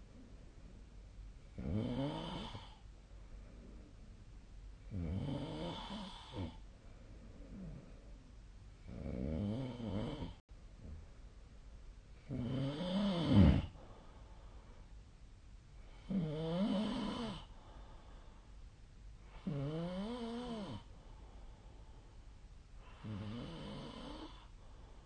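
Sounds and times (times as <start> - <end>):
person snoring: 1.6 - 2.8, 4.9 - 6.6, 8.9 - 10.4, 12.3 - 13.8, 16.0 - 17.5, 19.4 - 20.9, 22.8 - 24.5.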